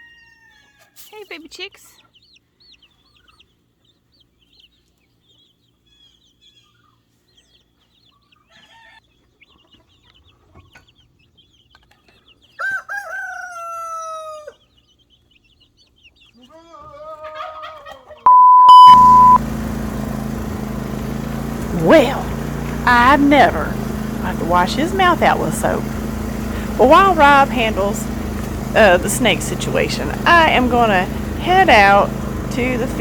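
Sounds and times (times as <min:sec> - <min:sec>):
baby chicks peeping: 0:00.0 - 0:33.0
censor bleep: 0:18.3 - 0:19.4.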